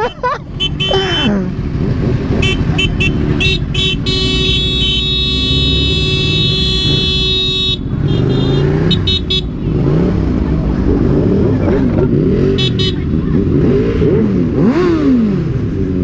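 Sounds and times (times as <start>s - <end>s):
motorcycle horn honking: 0.0s - 1.4s, 2.3s - 9.8s, 12.4s - 13.2s
motorcycle engine revving: 0.5s - 16.0s.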